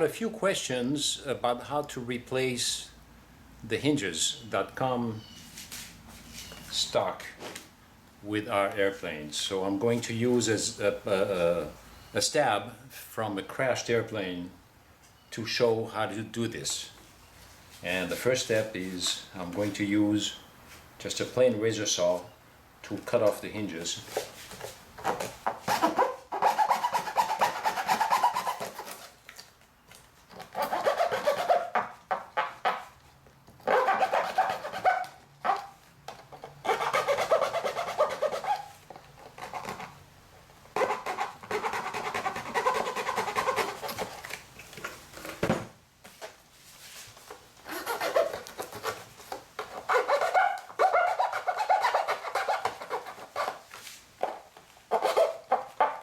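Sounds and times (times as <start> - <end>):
razor saw cutting plastic: 25.0 - 29.2, 30.3 - 32.9, 33.6 - 40.0, 40.7 - 44.4, 47.6 - 53.6.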